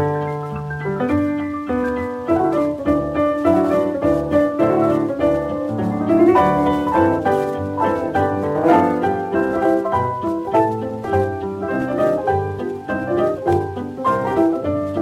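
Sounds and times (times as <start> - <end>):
piano duet playing: 0.0 - 15.0.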